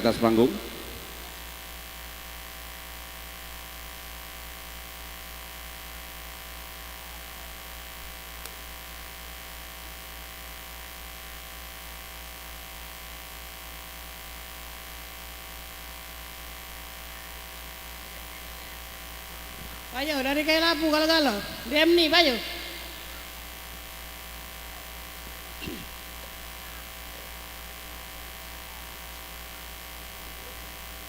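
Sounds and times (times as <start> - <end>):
sound system hiss: 0.0 - 2.5, 9.8 - 30.9
electrical mains hum: 0.0 - 31.0.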